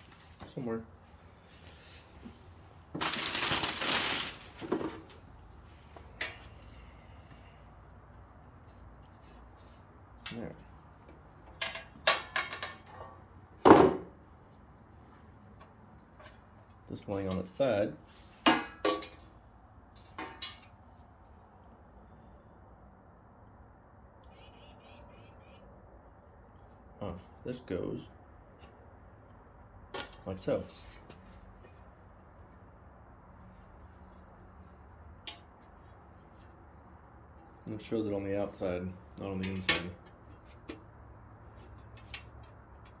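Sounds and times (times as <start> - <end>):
tools rustling and clattering: 0.0 - 7.4, 8.7 - 14.9, 18.1 - 20.8, 39.4 - 43.0
small bird chirping: 22.2 - 25.7.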